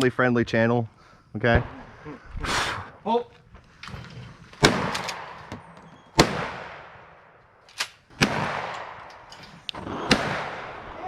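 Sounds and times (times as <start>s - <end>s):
shotgun blasts with echo: 4.6s - 5.5s, 6.1s - 7.3s, 8.2s - 11.0s.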